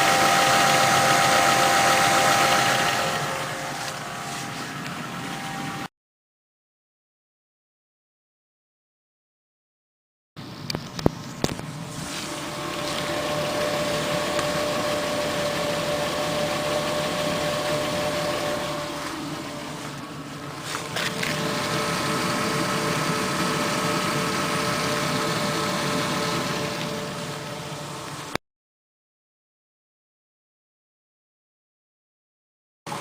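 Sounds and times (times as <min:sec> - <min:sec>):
engine running at low revs: 0:00.0 - 0:05.9, 0:10.4 - 0:28.4.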